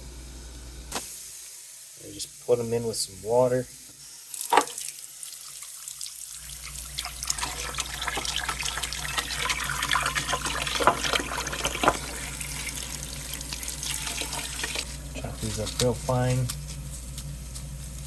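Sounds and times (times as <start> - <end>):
tap running into a bowl: 7.0 - 12.4, 13.4 - 14.8.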